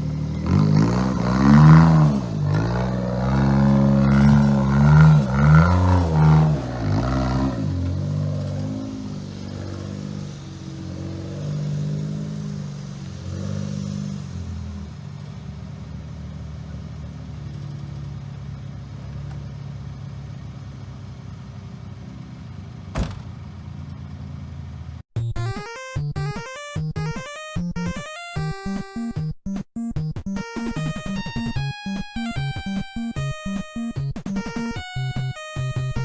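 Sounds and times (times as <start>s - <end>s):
car engine driving: 0.0s - 25.1s.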